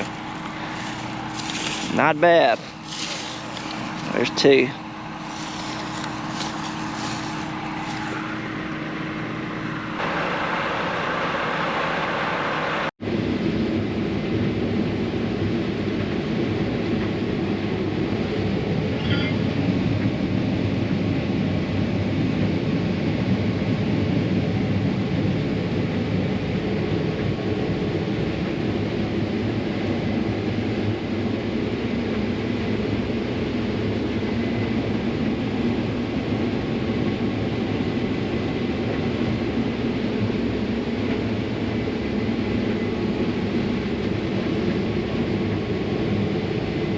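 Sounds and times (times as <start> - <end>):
combine harvester running: 0.0 - 46.9.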